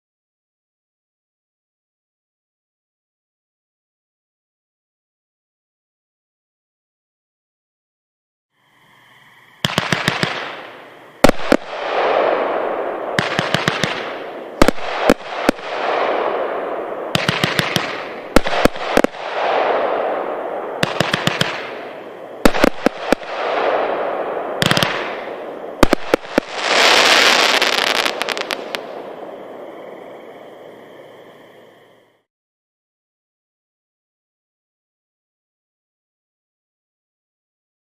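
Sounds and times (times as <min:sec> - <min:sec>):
fireworks crackle: 0:09.6 - 0:29.6
fireworks bangs: 0:09.6 - 0:29.7.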